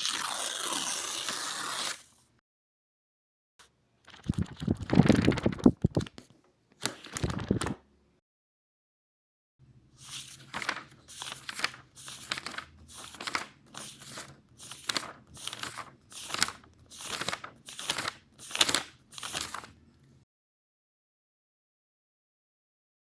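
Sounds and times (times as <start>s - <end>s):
paper rustling: 4.1s - 7.8s, 10.0s - 19.8s.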